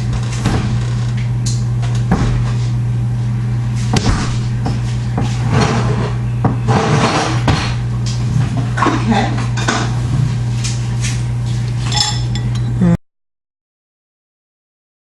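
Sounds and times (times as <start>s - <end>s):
refrigerator door opening and shutting: 0.0s - 2.6s
steady low hum: 0.0s - 13.0s.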